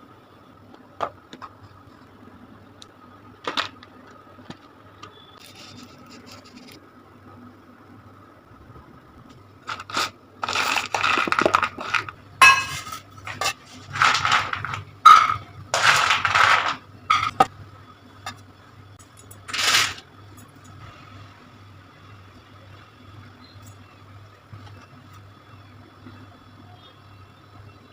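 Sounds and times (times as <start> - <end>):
faint steady hum: 0.0 - 27.9
utensils clinking on dishes: 9.7 - 17.5.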